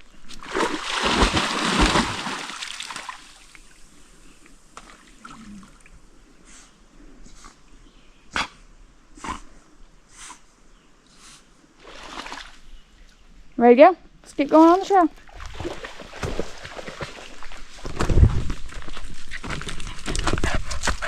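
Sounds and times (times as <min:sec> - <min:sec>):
dog splashing in water: 0:00.4 - 0:03.2.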